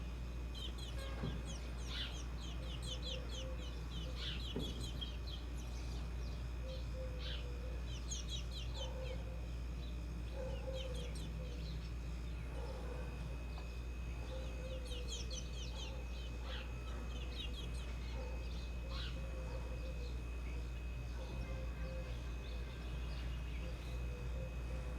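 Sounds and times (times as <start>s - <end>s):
steady low hum: 0.0s - 24.9s
bird clucking notes: 10.3s - 11.7s, 12.5s - 20.2s.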